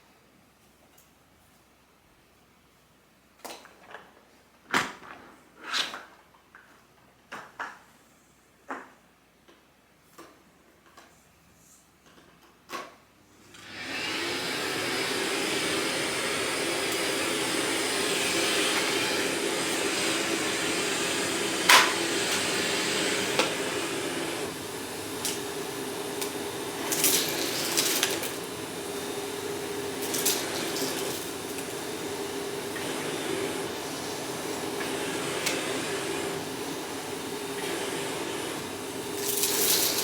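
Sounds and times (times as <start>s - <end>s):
vacuum cleaner running: 13.4s - 40.0s.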